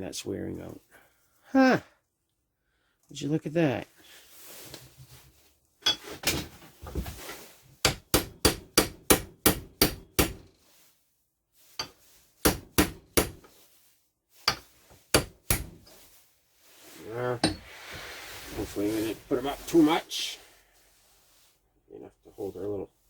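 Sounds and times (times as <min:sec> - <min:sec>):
hammer tapping on metal parts: 0:07.8 - 0:10.4, 0:11.8 - 0:13.5, 0:14.5 - 0:15.9.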